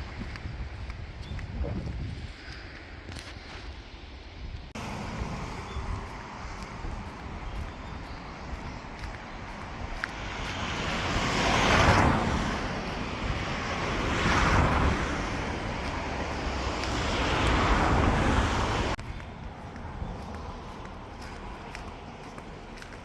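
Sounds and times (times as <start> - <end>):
road vehicles passing: 4.7 - 23.0.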